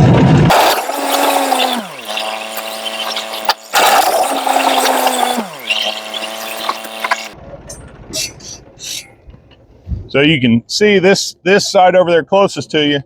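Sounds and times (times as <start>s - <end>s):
tractor engine revving: 0.5s - 7.4s.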